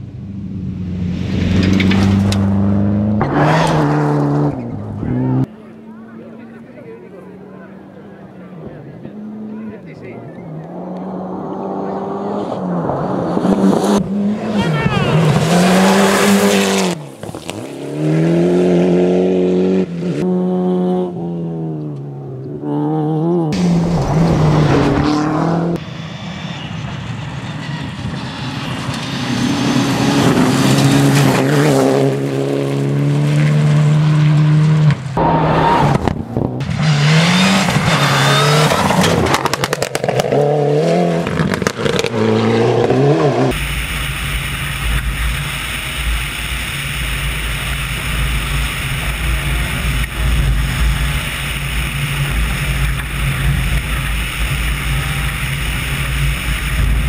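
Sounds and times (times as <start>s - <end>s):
rally car engines revving: 0.1s - 43.8s, 44.4s - 57.0s
tyres on gravel: 14.6s - 18.1s.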